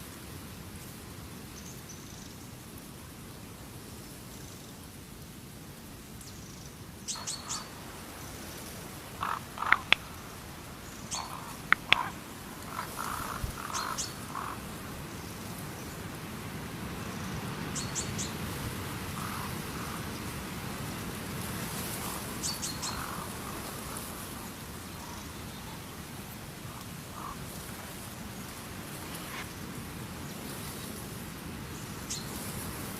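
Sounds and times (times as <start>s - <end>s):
birds chirping: 7.1s - 14.7s, 22.1s - 26.0s
sharp clicks: 9.3s - 10.2s, 11.1s - 13.3s.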